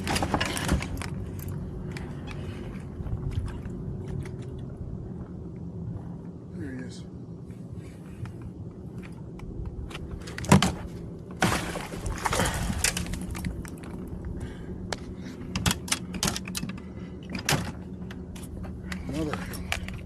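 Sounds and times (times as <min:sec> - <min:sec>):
steady low hum: 0:00.0 - 0:20.0
kayak handling clicks and knocks: 0:15.5 - 0:20.0.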